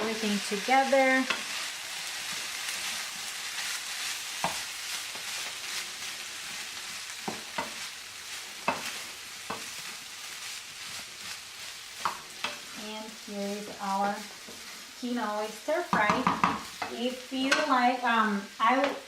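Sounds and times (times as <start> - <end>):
food sizzling in a hot pan: 0.0 - 19.0
utensil knocking against pan: 15.9 - 16.9.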